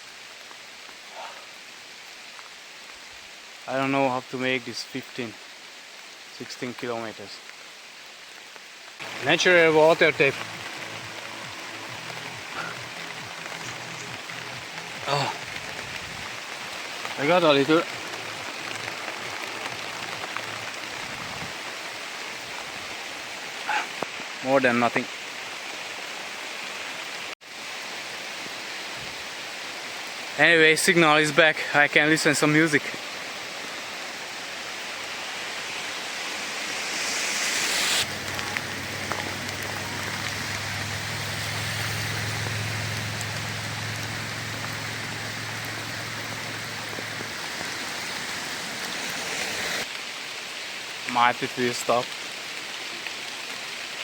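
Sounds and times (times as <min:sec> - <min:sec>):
rain hissing: 0:00.0 - 0:54.0
running water: 0:00.0 - 0:54.0.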